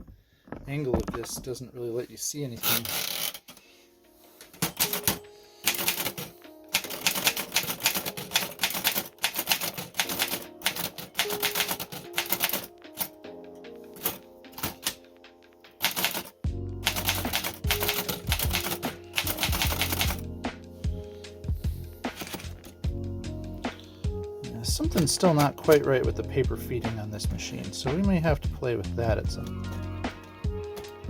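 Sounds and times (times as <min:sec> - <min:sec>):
background music: 0:00.0 - 0:31.0
typewriter keystrokes: 0:04.6 - 0:13.2, 0:15.8 - 0:20.2, 0:22.1 - 0:22.7.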